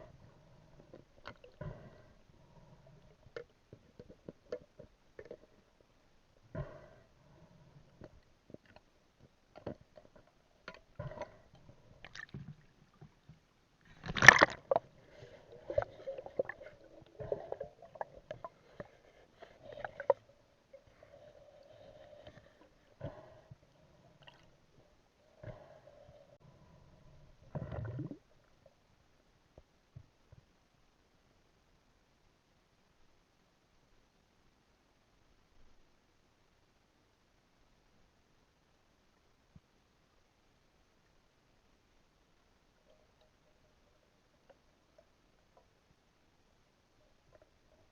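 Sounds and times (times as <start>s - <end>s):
water sloshing and gurgling: 0.0s - 5.9s, 6.6s - 28.6s.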